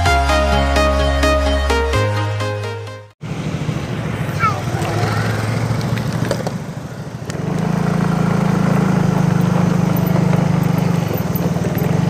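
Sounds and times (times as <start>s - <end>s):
engine running: 3.2s - 12.0s.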